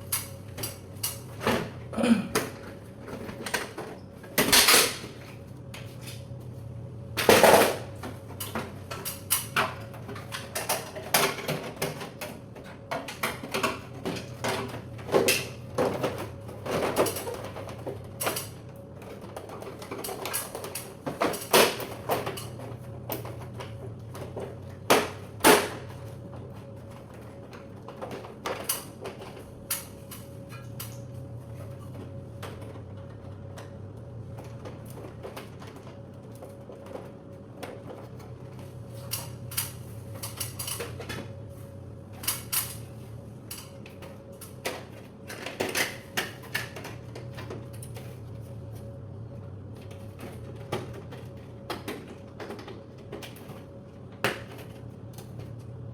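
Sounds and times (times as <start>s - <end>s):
low hum with faint tone: 0.0s - 55.9s.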